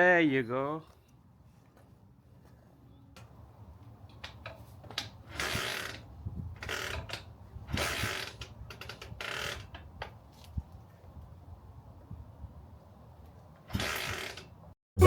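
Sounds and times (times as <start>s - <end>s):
motorcycle kick-start ratcheting whirr: 4.2s - 9.9s, 13.6s - 14.6s.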